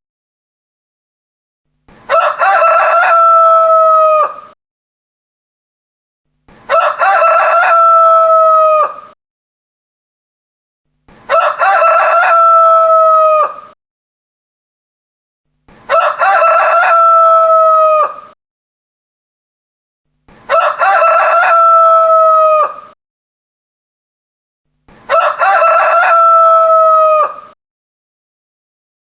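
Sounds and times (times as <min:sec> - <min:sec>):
rooster crowing: 0:02.1 - 0:04.6, 0:06.7 - 0:09.2, 0:11.3 - 0:13.8, 0:15.9 - 0:18.4, 0:20.5 - 0:23.0, 0:25.1 - 0:27.6.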